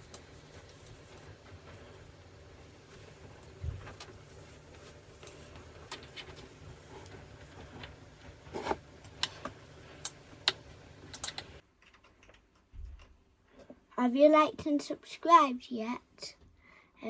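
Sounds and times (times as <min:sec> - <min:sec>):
small clicks and taps of hands working parts: 0:08.6 - 0:13.9.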